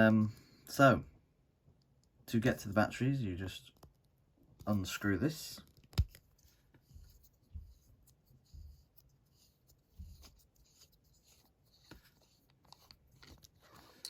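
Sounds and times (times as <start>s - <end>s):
faint scraping of threaded part: 6.3s - 14.0s.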